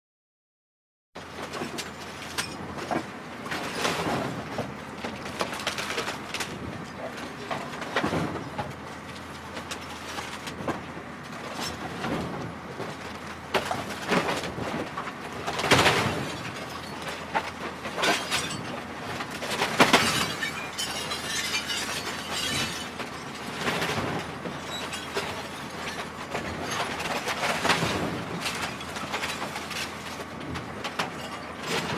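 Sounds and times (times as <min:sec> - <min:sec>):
glass shattering: 0:18.0 - 0:18.7, 0:19.8 - 0:23.6
tinkling debris: 0:20.0 - 0:23.6.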